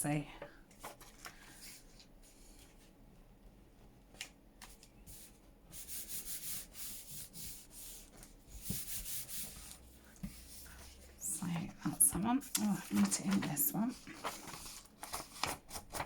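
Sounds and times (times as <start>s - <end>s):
hand rubbing over paper: 5.1s - 14.8s.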